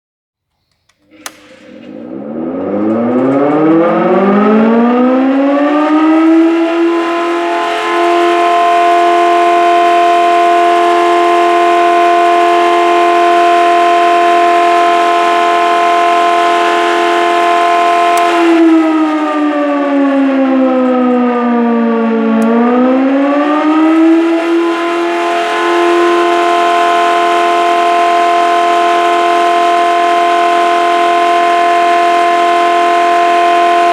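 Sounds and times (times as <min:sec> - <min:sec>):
siren click: 0:00.9 - 0:11.8, 0:15.0 - 0:28.1
siren winding up and wailing: 0:01.1 - 0:33.9.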